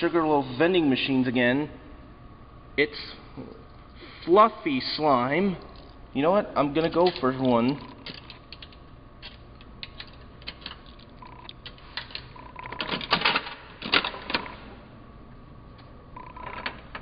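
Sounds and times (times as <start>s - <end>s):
vending machine mechanical clicks: 6.8s - 14.7s.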